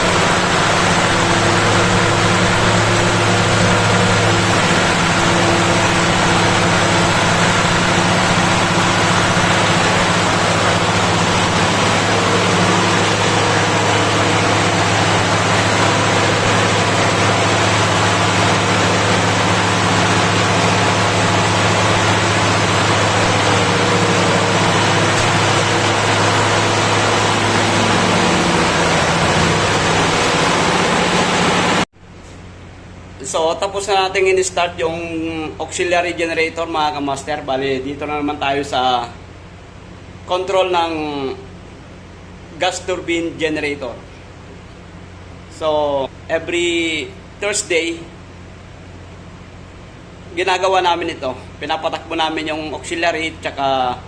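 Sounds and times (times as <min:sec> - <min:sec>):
constant low hum: 0:00.0 - 0:43.0
diesel generator running: 0:00.0 - 0:54.0.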